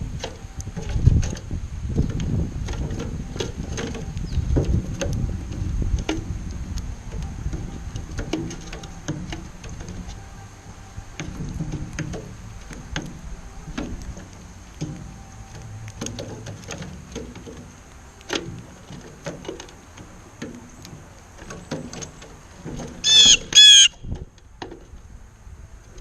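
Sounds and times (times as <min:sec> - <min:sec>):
bird calling: 0:07.4 - 0:24.1.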